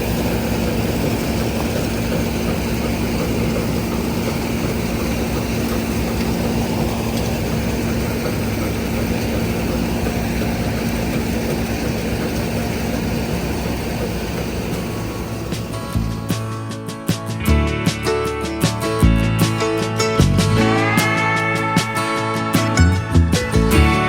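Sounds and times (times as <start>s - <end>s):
threshing machinery clatter: 0.0s - 16.0s
combine harvester engine hum: 0.0s - 16.5s.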